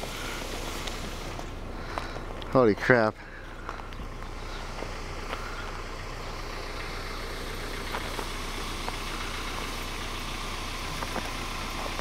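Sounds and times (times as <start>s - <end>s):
engine idling with low hum: 0.0s - 12.0s.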